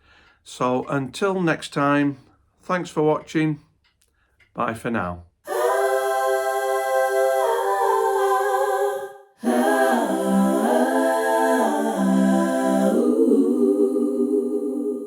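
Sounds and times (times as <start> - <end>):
wordless voices singing chords: 5.5 - 15.0.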